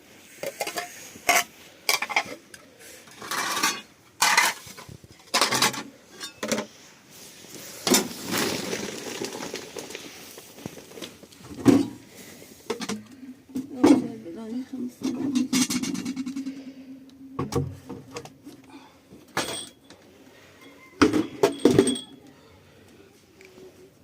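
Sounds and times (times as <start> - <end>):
cookware and cutlery clinking: 19.3 - 20.0, 20.6 - 22.2.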